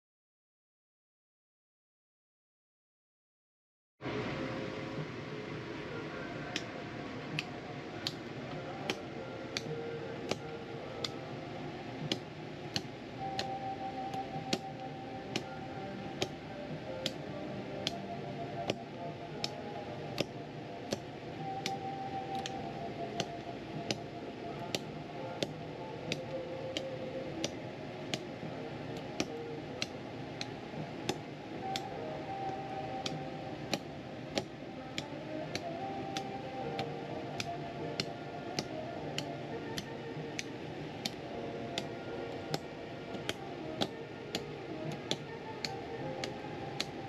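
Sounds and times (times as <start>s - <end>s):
soft melody: 4.0s - 47.0s
steady ticking beat: 12.0s - 47.0s.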